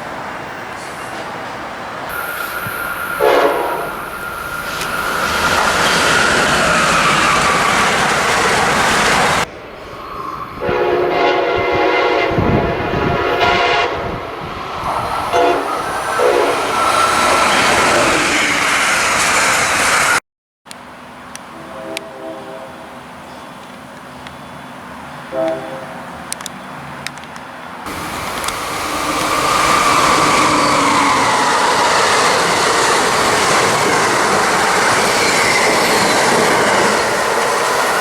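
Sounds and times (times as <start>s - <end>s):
rumble and clatter of passing trains: 0.0s - 38.0s
locomotive horns: 2.1s - 8.2s, 10.6s - 14.3s, 15.2s - 17.6s, 21.5s - 23.0s, 25.2s - 26.1s.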